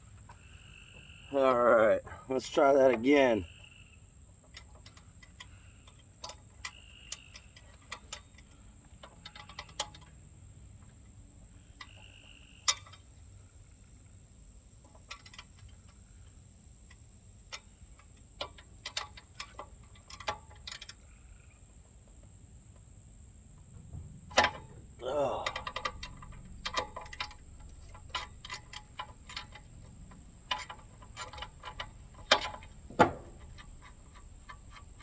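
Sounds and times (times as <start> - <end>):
ratchet wrench clicking on metal: 25.4 - 35.0.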